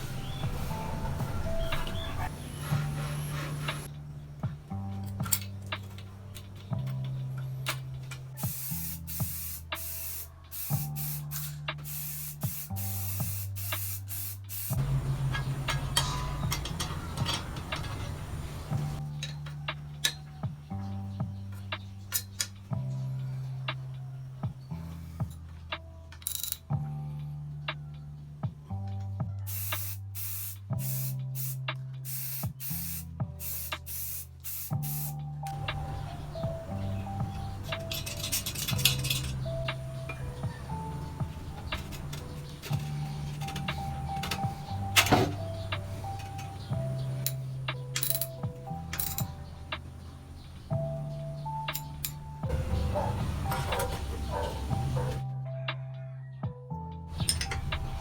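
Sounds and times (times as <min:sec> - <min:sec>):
quiet background music: 0:00.0 - 0:58.0
spray paint can hissing: 0:08.4 - 0:14.8, 0:29.5 - 0:35.2.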